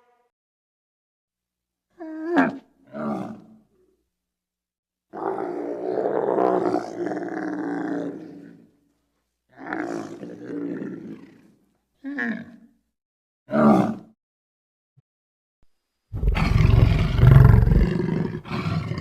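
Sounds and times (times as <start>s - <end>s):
creature growling calls: 5.1s - 8.7s, 16.2s - 19.0s
creature roar: 5.1s - 8.7s, 16.2s - 19.0s.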